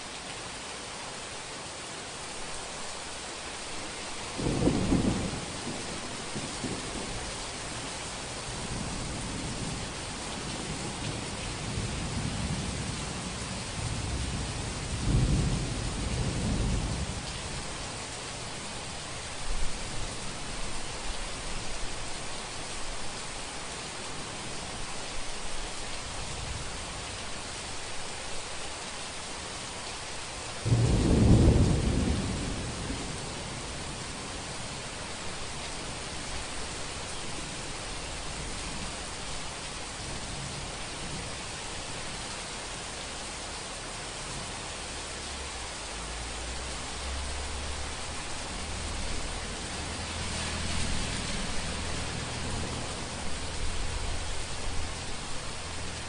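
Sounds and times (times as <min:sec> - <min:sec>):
heavy rain falling: 0:00.0 - 0:56.0
low rolling thunder: 0:04.4 - 0:18.6, 0:30.6 - 0:41.3, 0:47.2 - 0:56.0.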